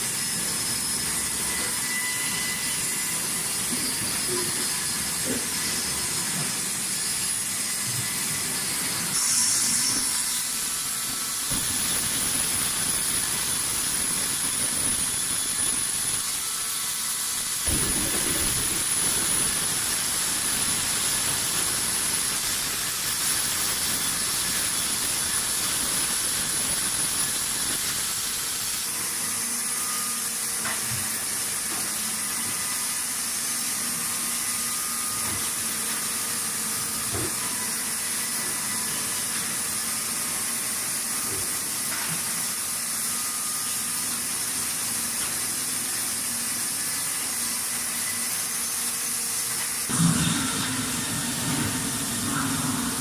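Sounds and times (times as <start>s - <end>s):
sawmill machinery hiss and whine: 0.0s - 53.0s
low machinery hum: 49.9s - 53.0s.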